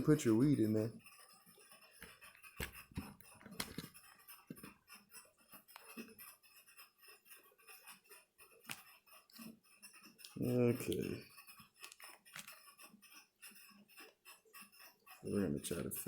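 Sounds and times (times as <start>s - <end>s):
hands handling laptop parts: 2.0s - 4.7s, 8.6s - 8.8s, 10.2s - 12.6s.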